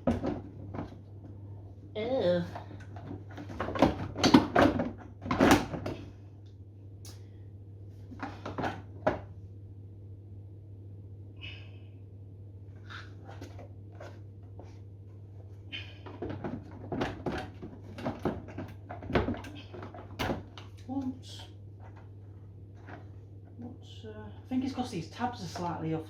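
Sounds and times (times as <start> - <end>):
plastic case clicks and knocks: 3.0 - 6.0.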